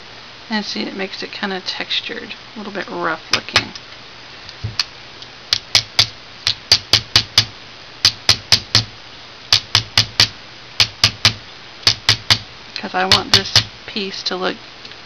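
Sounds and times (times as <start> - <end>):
hammer tapping metal: 5.5 - 8.9, 9.5 - 12.5, 13.1 - 13.7.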